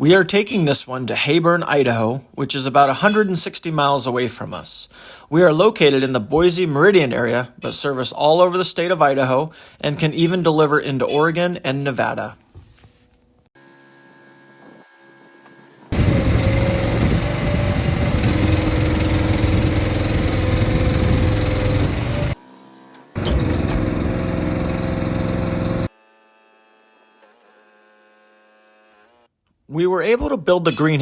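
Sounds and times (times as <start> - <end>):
engine running loudly: 15.9 - 22.4, 23.2 - 25.9.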